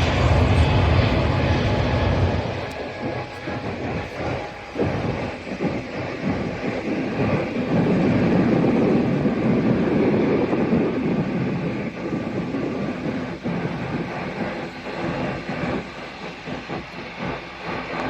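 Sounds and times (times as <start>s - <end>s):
jet engines roaring: 0.0s - 18.0s.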